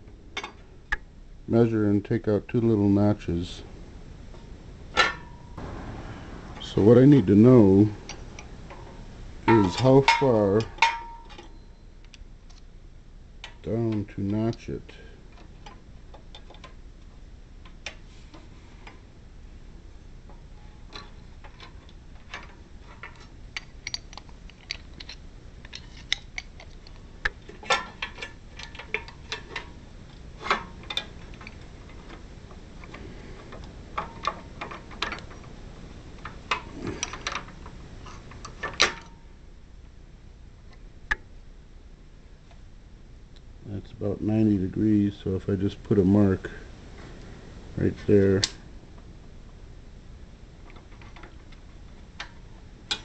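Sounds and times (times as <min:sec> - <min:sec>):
metal tools clicking and knocking: 0:09.5 - 0:11.6, 0:20.9 - 0:29.6.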